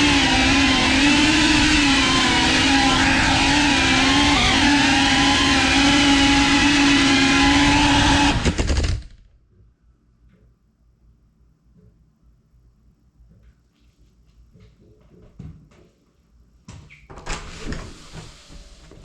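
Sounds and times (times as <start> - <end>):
drone motors whining: 0.0 - 9.1.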